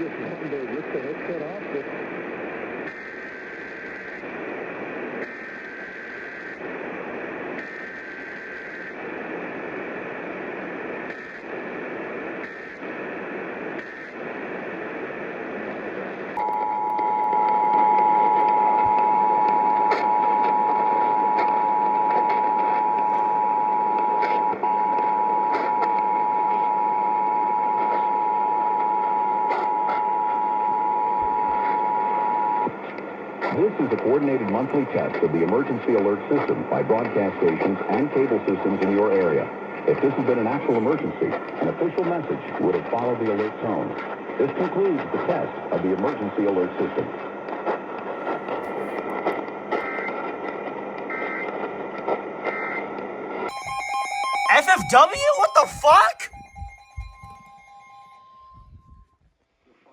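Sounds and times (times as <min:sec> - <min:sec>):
data tone bursts: 0:53.5 - 0:58.8
two-tone attention signal: 0:53.5 - 0:59.0.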